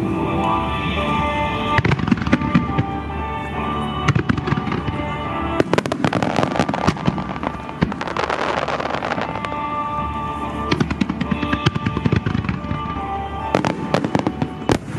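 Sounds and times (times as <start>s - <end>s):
fireworks bangs and crackling: 0.0s - 14.9s
music: 0.0s - 14.9s.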